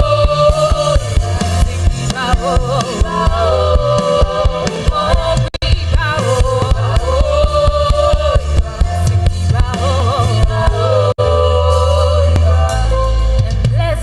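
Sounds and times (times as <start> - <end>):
band with bass and percussion: 0.0 - 14.0
voices singing gospel: 0.0 - 14.0.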